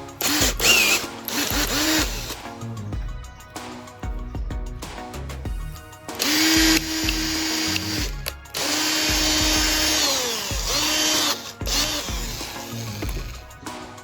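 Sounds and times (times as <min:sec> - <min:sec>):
background music: 0:00.0 - 0:14.0
power drill motor running: 0:00.2 - 0:02.4, 0:06.2 - 0:13.4.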